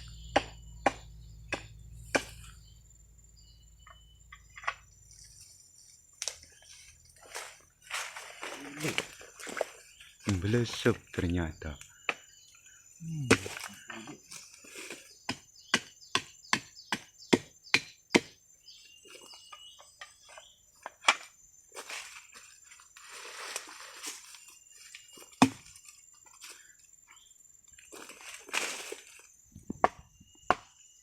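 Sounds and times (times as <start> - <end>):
high insect buzz: 0.0 - 31.0
chopping knocks on wood: 0.3 - 2.3, 15.3 - 18.4, 25.4 - 25.7.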